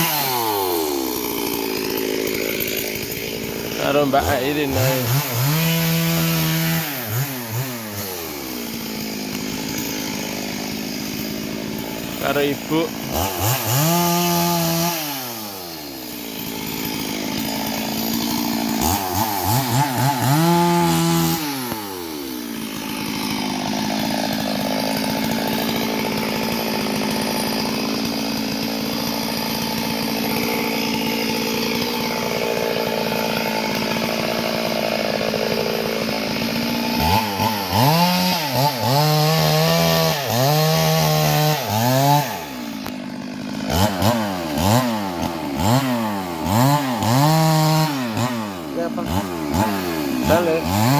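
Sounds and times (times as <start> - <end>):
chainsaw revving: 0.0 - 50.9.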